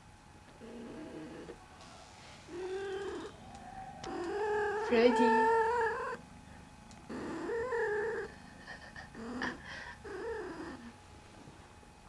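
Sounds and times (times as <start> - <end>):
cat meowing: 2.5 - 6.2.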